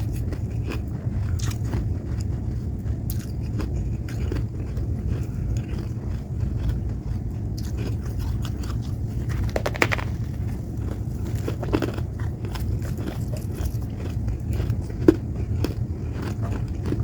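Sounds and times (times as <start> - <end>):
frost being chewed: 11.8 - 17.0.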